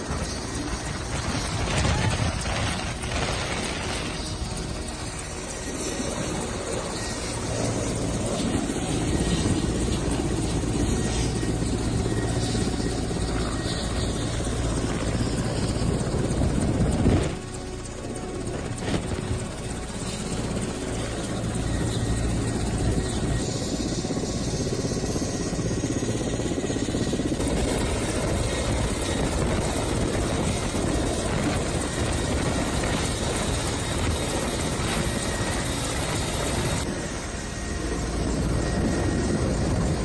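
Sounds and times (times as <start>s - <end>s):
loud machine noise: 0.0s - 17.8s.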